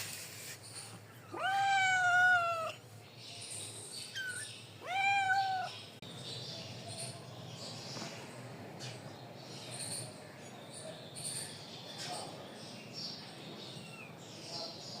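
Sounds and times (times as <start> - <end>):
kitten meowing: 1.2 - 2.8, 4.2 - 5.8.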